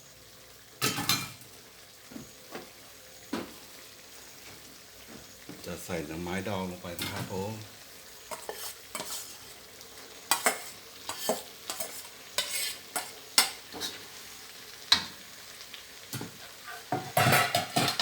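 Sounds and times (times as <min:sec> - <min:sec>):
low sizzle: 0:00.0 - 0:18.0
spatula scraping in a pan: 0:08.2 - 0:14.3, 0:16.2 - 0:18.0.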